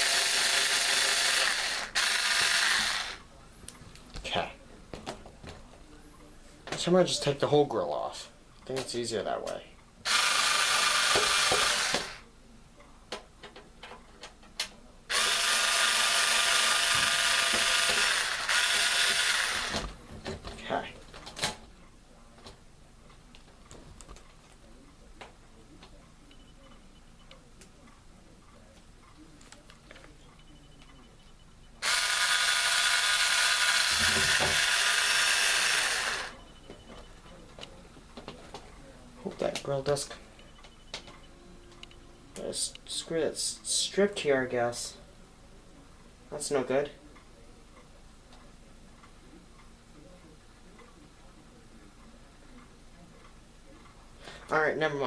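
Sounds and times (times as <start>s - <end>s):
power screwdriver running: 0.0s - 3.2s, 10.1s - 12.2s, 15.1s - 19.9s, 31.8s - 36.3s.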